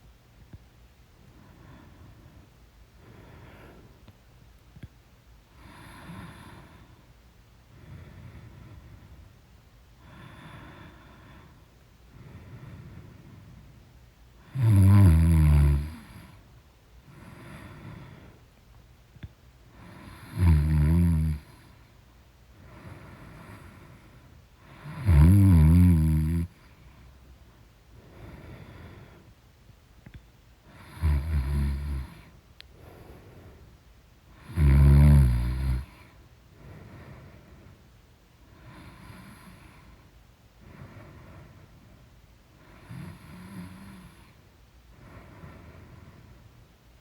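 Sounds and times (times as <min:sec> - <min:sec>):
quiet breathing out: 0:01.2 - 0:04.9, 0:05.5 - 0:18.6, 0:19.2 - 0:47.0
woman snoring loudly: 0:14.5 - 0:16.2, 0:20.0 - 0:21.5, 0:24.8 - 0:26.5, 0:30.8 - 0:32.2, 0:34.4 - 0:36.0.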